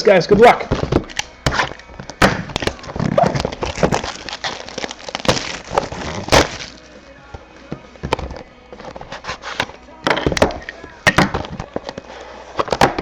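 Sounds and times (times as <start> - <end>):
packaging crinkling and tearing: 1.2 - 6.9.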